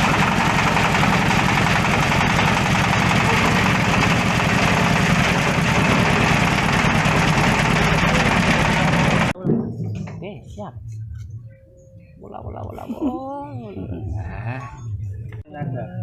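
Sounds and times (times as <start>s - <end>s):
shredding machine droning: 0.0s - 9.4s.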